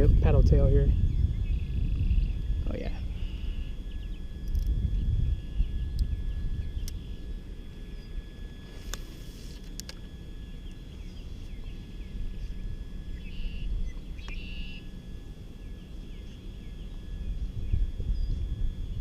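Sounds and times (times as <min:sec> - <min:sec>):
steady low rumble: 0:00.0 - 0:19.0
thin high-pitched whine: 0:00.0 - 0:19.0
small bird chirps: 0:10.5 - 0:14.9.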